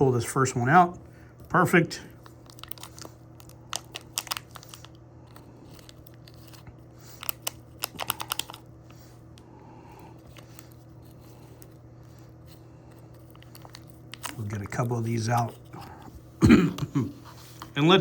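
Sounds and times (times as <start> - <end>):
faint steady hum: 0.0 - 18.0
paper wrapper crinkling and tearing: 2.2 - 8.7, 10.3 - 16.0.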